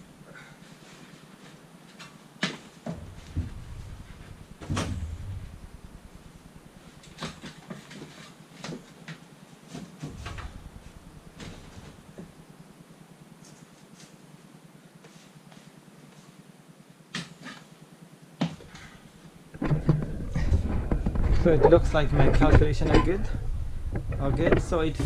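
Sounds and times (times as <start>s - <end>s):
knocks and clunks of building work: 1.9s - 12.4s, 18.4s - 25.0s.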